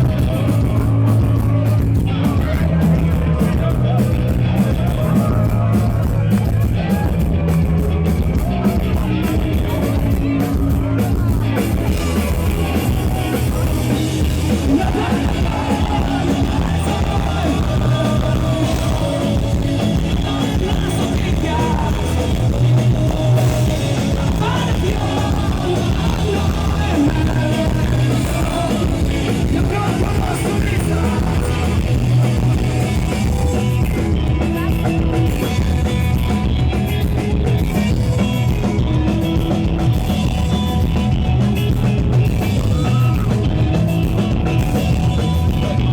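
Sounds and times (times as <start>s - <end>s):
rock band playing live: 0.0s - 45.9s
person singing: 8.4s - 36.0s.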